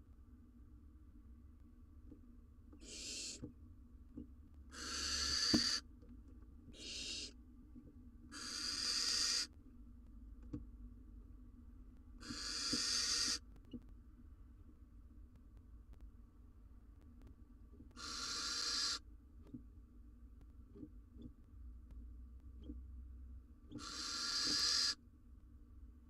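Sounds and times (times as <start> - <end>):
owls hissing: 2.8 - 3.4, 4.7 - 5.8, 6.8 - 7.3, 8.3 - 9.5, 12.2 - 13.4, 18.0 - 19.0, 23.8 - 25.0.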